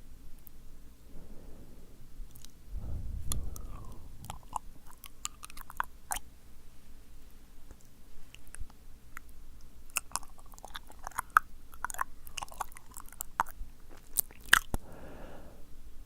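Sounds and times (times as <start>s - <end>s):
soft puff of breath: 1.1s - 4.7s, 14.8s - 15.8s
lip smacks: 2.3s - 6.3s, 7.7s - 14.9s
tongue clicks: 7.7s - 14.8s.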